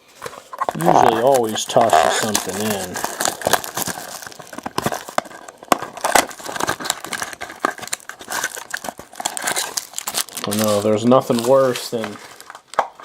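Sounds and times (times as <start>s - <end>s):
cards being handled: 0.0s - 13.0s
card pack wrappers tearing and crinkling: 0.1s - 13.0s.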